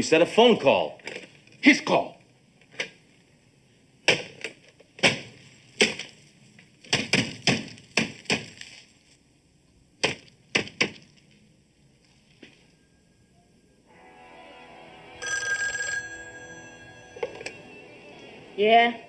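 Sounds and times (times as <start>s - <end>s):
sharp knocks and thuds: 4.1s - 6.2s, 6.8s - 8.8s, 10.0s - 11.2s.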